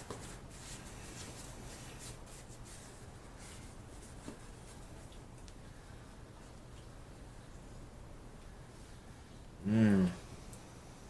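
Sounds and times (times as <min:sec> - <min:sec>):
scratching and rustling handling: 0:00.0 - 0:05.6
low steady hum: 0:00.0 - 0:11.0.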